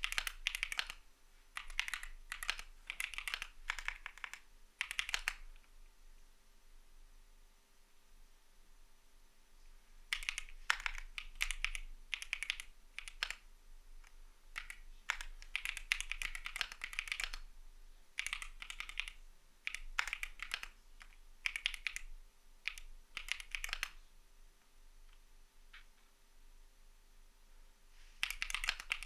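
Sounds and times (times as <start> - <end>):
typing on mechanical keyboard: 0.0 - 1.0, 1.6 - 5.7, 10.1 - 13.4, 14.6 - 17.5, 18.2 - 24.0, 28.2 - 29.0.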